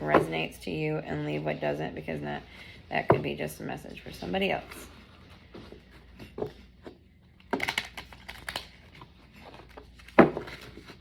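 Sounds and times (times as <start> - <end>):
cards rustling: 7.4 - 11.0.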